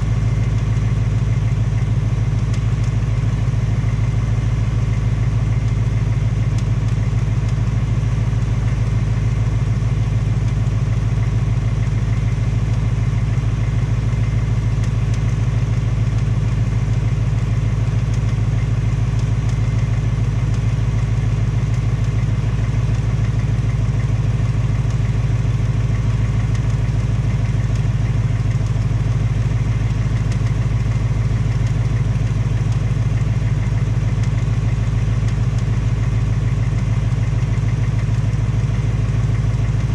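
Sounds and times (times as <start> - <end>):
engine idling: 0.0 - 39.9
fast tapping from engine: 0.0 - 39.9.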